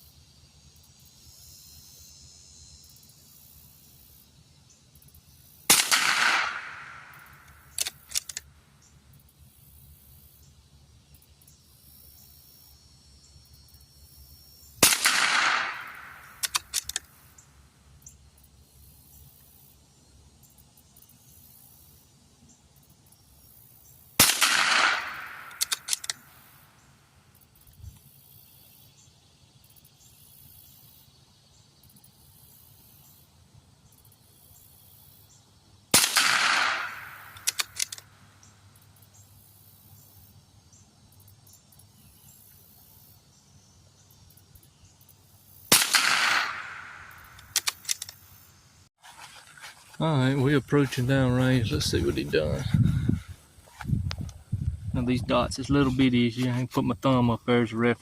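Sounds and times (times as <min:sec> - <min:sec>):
rifle shots: 0:05.7 - 0:08.4, 0:14.8 - 0:17.0, 0:24.2 - 0:26.2, 0:35.9 - 0:38.0, 0:45.7 - 0:48.2
rifle bolt metallic clicks: 0:07.1 - 0:08.5, 0:14.9 - 0:17.1, 0:24.2 - 0:26.2, 0:36.0 - 0:38.1, 0:45.7 - 0:48.2.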